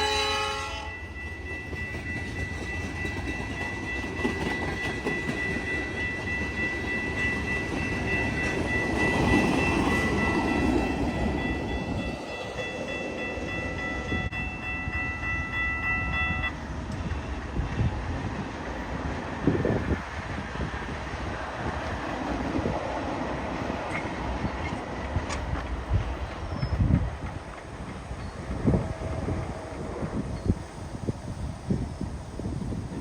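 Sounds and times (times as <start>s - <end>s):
steady high ringing tone: 0.0s - 17.9s
train rumbling past: 0.0s - 33.0s.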